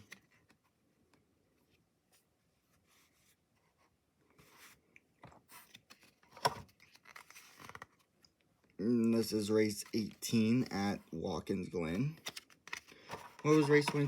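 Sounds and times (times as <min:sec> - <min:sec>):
cards rubbing and sliding: 0:12.1 - 0:14.0.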